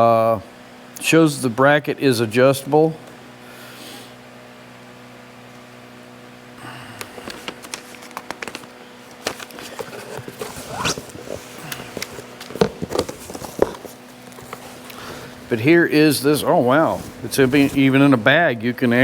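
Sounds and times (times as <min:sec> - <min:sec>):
steady low hum: 0:00.0 - 0:19.0
clicks and knocks of handled parts: 0:07.0 - 0:15.0
plastic bag rustling and crinkling: 0:07.0 - 0:15.6, 0:16.5 - 0:18.2.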